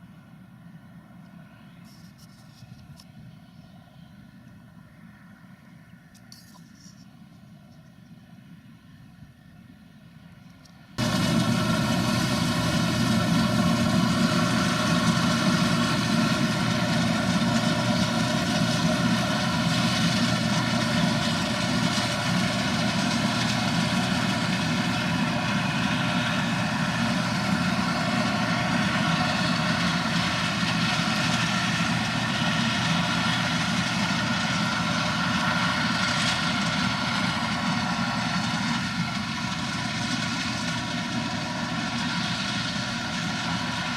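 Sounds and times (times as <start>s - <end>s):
diesel engine running: 11.0s - 43.9s.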